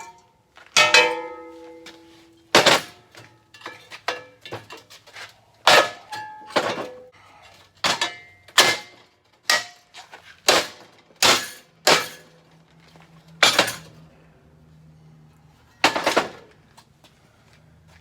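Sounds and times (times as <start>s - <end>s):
hammer striking steel: 0.8s - 3.0s.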